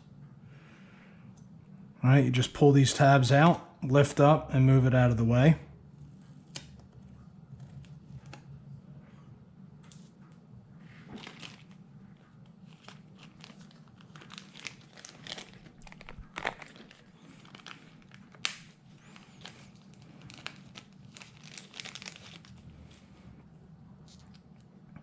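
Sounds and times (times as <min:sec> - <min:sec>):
plastic packaging crinkling: 0:10.9 - 0:23.3.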